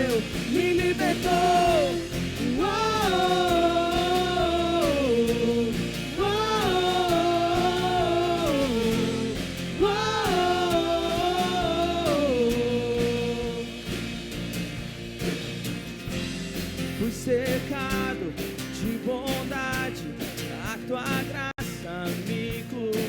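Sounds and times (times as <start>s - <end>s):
live worship band music: 0.0s - 23.0s.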